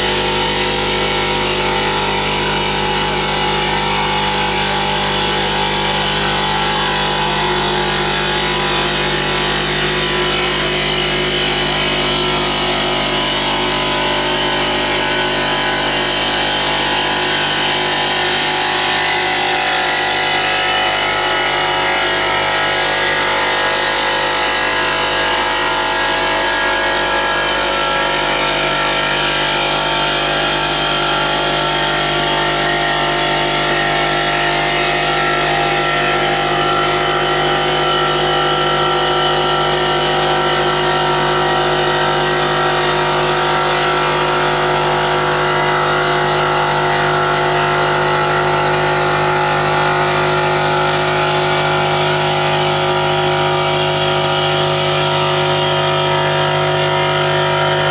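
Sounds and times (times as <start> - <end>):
stone polishing machine humming: 0.0 - 57.9.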